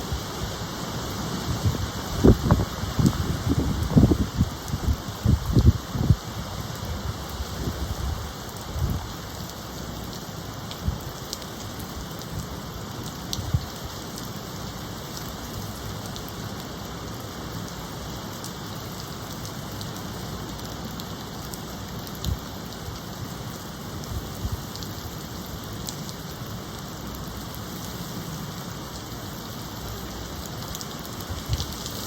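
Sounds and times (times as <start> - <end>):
steady rain falling: 0.0 - 32.0.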